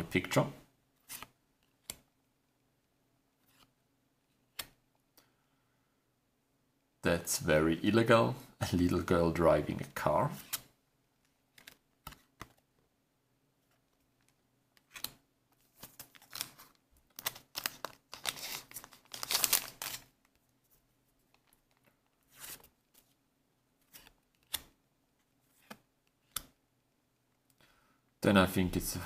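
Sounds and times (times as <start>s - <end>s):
trading cards rustling and crinkling: 11.4s - 12.8s, 13.6s - 23.2s, 23.8s - 24.8s.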